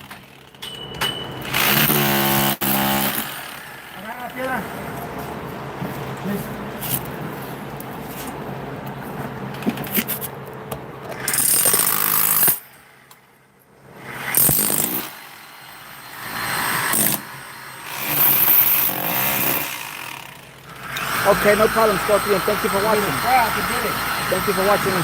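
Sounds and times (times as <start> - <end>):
power tool cutting stone: 1.5 - 4.6, 14.0 - 25.0.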